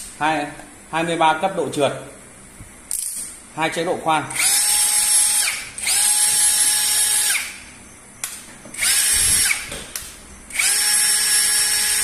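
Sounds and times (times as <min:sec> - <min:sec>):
cordless drill motor whine: 0:04.4 - 0:07.7, 0:08.7 - 0:09.8, 0:10.5 - 0:12.0.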